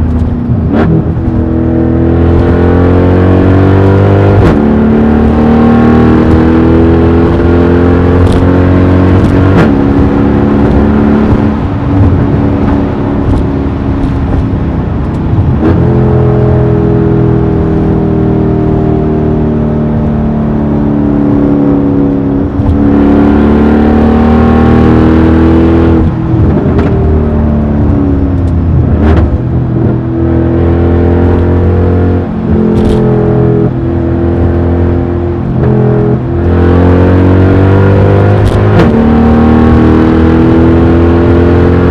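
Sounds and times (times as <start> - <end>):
car engine revving through exhaust: 0.0 - 41.9
exhaust cracks: 9.1 - 15.8, 32.4 - 33.0.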